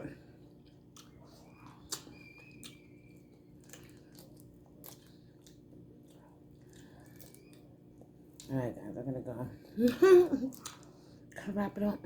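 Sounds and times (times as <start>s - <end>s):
low steady hum: 0.0s - 12.0s
mouth chewing clicks and smacks: 0.6s - 8.5s, 10.5s - 11.0s.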